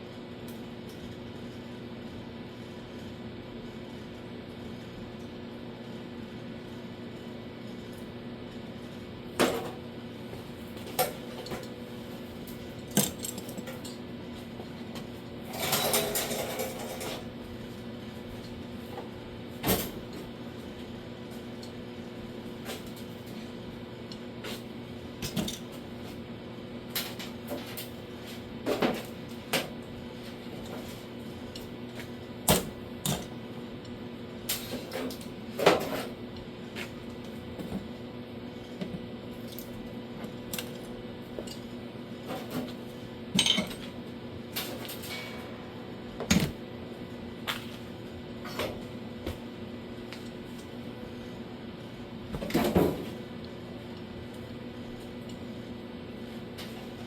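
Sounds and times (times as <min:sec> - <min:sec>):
tools and metal parts clinking: 0:12.8 - 0:14.0, 0:15.5 - 0:17.2, 0:43.4 - 0:44.0.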